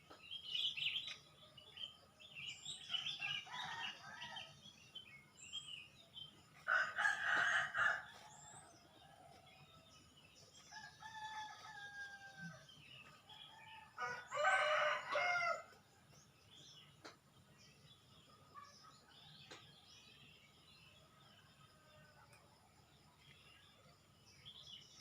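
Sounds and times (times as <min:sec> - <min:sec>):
small birds chirping: 0:00.0 - 0:25.0
rooster crowing: 0:06.7 - 0:08.2, 0:13.8 - 0:15.7.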